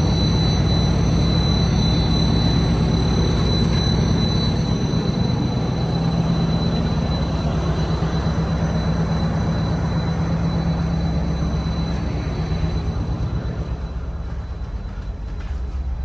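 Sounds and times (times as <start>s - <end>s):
ship engine droning: 0.0s - 16.0s
thin high whine: 0.0s - 16.0s.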